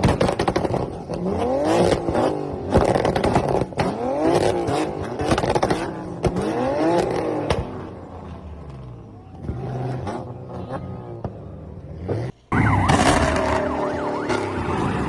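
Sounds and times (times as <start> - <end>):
car engine revving: 0.0 - 15.0
exhaust popping and crackling: 0.0 - 15.0.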